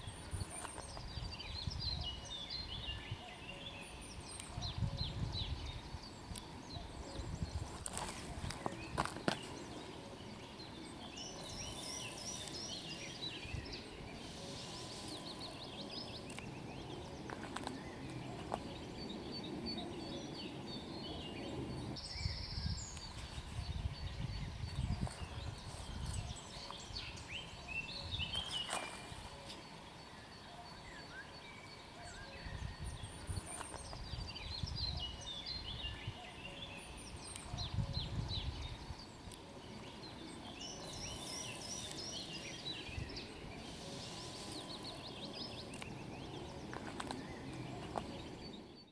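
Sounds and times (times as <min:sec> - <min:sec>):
birds chirping and trilling: 0:00.0 - 0:48.9.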